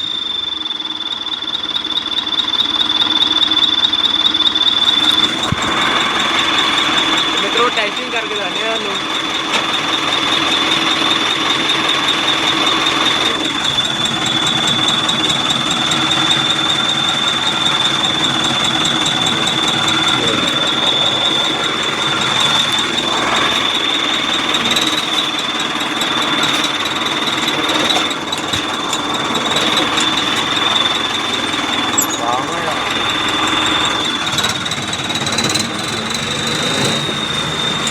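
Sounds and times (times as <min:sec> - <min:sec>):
high-pitched turbo whistle: 0:00.0 - 0:04.0
tractor engine running: 0:00.0 - 0:37.9.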